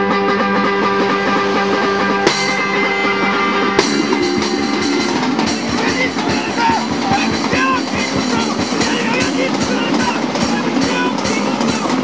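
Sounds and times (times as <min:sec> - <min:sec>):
rock band music: 0:00.0 - 0:12.0
cymbal crash: 0:00.1 - 0:12.0.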